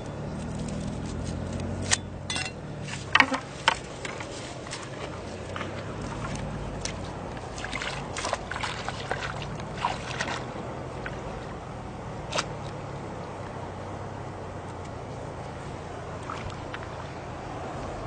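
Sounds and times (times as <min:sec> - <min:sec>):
low steady hum: 0:00.0 - 0:18.0
water sloshing and trickling: 0:00.3 - 0:18.0
short splashes: 0:02.8 - 0:11.6, 0:12.2 - 0:12.9, 0:16.0 - 0:17.3.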